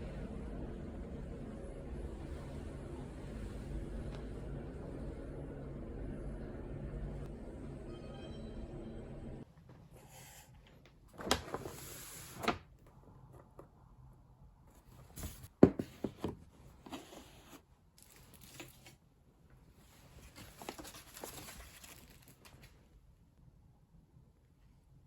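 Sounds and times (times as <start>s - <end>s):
rustling handling noises: 14.8s - 19.0s, 19.6s - 22.9s.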